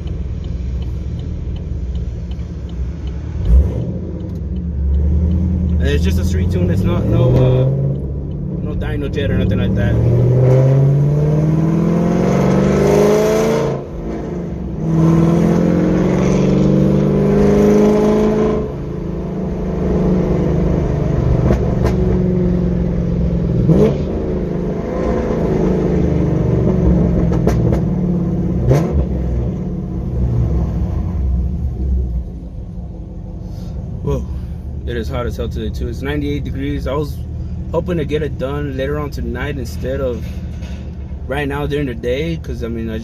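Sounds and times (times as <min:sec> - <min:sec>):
car engine accelerating hard: 0:03.4 - 0:32.5.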